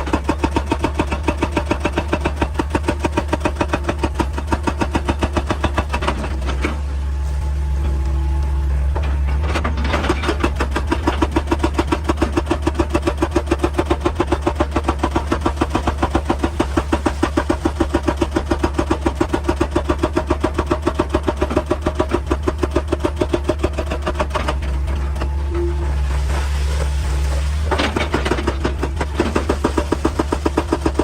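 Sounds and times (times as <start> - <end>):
hydraulic breaker hammering rock: 0.0 - 6.7, 9.0 - 31.0
low engine drone: 6.2 - 10.8, 24.2 - 30.8.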